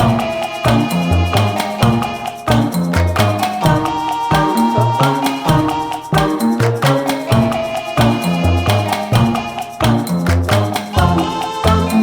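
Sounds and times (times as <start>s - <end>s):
upbeat music with wood-block percussion: 0.0s - 12.0s.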